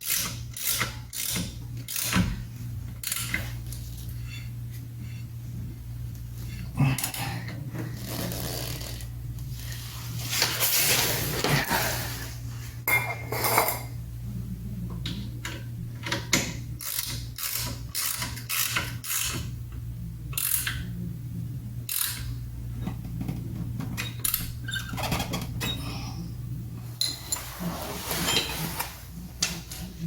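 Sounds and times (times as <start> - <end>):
ratchet wrench clicking: 0.0 - 2.2, 3.0 - 3.5, 16.8 - 19.5, 20.4 - 20.8, 21.9 - 22.3
steady low hum: 0.0 - 30.0.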